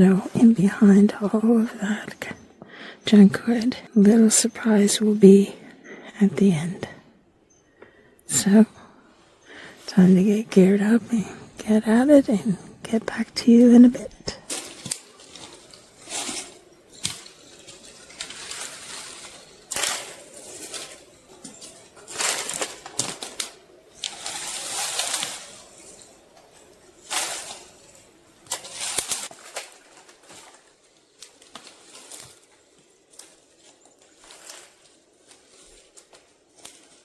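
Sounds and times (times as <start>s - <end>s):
rustling and scuffing: 14.4s - 37.0s.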